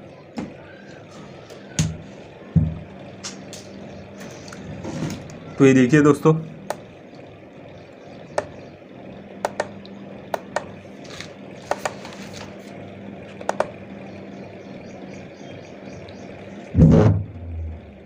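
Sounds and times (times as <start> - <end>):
steady low hum: 0.0 - 18.0
clicks and knocks on amplifier: 16.8 - 17.4.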